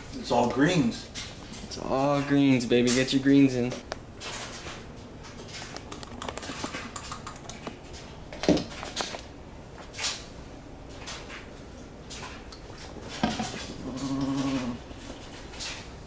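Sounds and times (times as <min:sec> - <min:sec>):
short vocal sound: 0:13.8 - 0:14.8.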